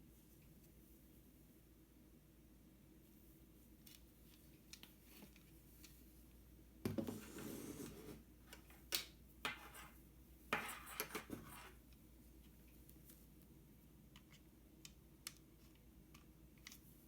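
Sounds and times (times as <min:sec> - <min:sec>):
objects rubbing and rustling: 0:06.9 - 0:13.3.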